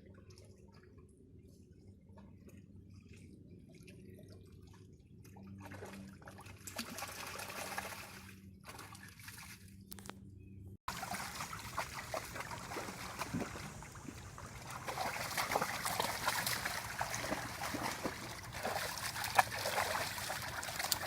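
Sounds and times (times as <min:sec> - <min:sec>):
water sloshing and splashing: 0:01.8 - 0:10.0, 0:10.9 - 0:21.0
dog splashing in water: 0:10.9 - 0:21.0.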